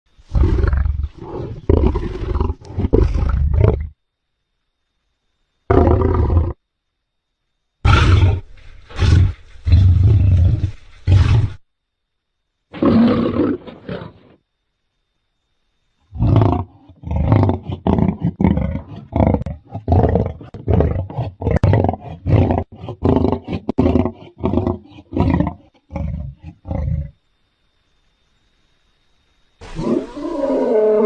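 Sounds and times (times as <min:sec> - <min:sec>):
lion roaring: 0:00.3 - 0:03.9, 0:05.7 - 0:06.6, 0:07.8 - 0:11.6, 0:12.7 - 0:14.4, 0:16.1 - 0:27.2, 0:29.6 - 0:31.0.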